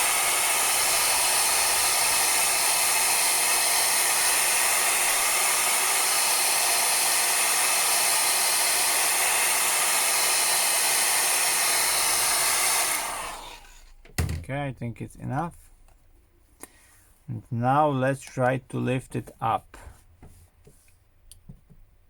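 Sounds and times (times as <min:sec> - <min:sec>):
hot-air gun blowing: 0:00.0 - 0:14.0.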